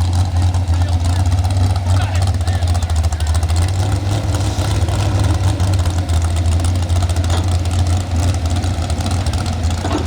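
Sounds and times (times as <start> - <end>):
truck engine idling: 0.0 - 10.0.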